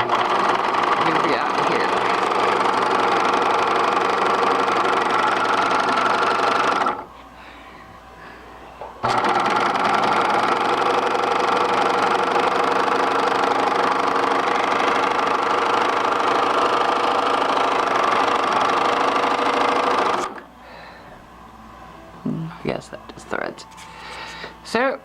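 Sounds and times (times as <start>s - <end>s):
sewing machine running: 0.0s - 7.1s, 9.0s - 20.4s.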